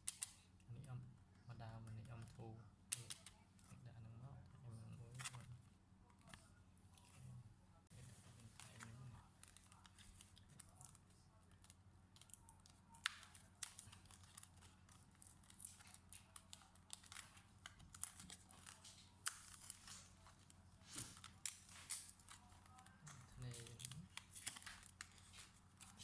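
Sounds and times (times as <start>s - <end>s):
hands clicking laptop parts: 0.0s - 0.4s.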